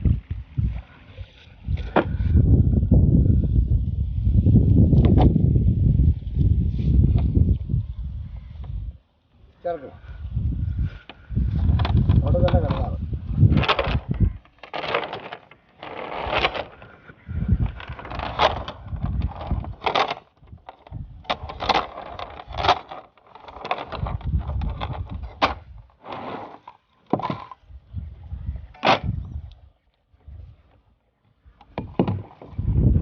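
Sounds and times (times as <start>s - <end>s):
low rumbling: 0.0s - 9.0s, 32.5s - 33.0s
wooden boat knocking: 31.7s - 32.6s.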